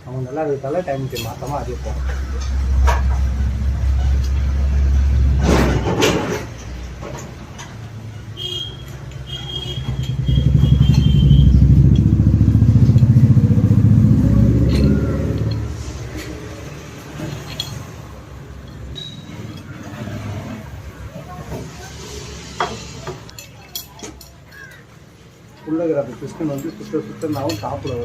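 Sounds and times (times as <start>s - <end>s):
metal parts clicking: 1.0s - 21.0s, 22.8s - 25.0s, 26.4s - 28.0s
vehicle engine droning: 1.5s - 23.3s.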